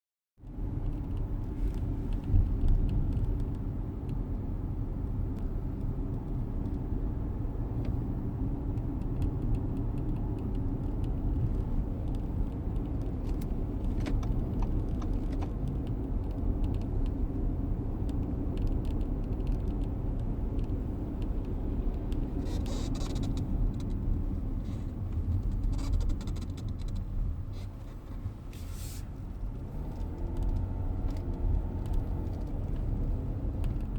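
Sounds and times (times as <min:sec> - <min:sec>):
road and engine rumble: 0:00.4 - 0:33.9
car seat squeaks and creaks: 0:22.3 - 0:29.1.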